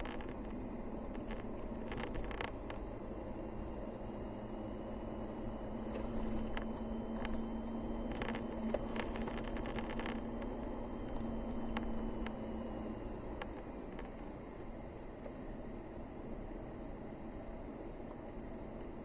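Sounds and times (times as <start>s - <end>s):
vehicle engine and tyre hum: 0.0s - 19.0s
sharp clicks or rattles: 8.1s - 10.5s.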